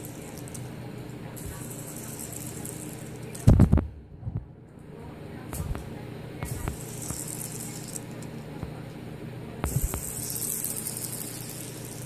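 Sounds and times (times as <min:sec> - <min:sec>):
bearing spinning whir: 0:06.5 - 0:08.3, 0:09.6 - 0:12.0.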